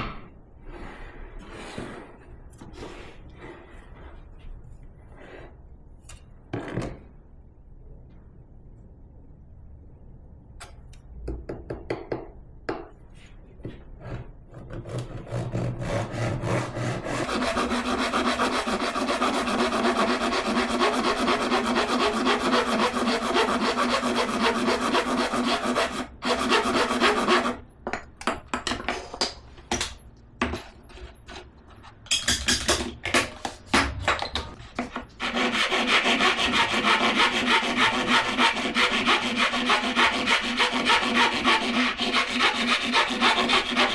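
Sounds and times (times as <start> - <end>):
hand tool stroking wood: 16.8 - 27.5, 34.8 - 43.9.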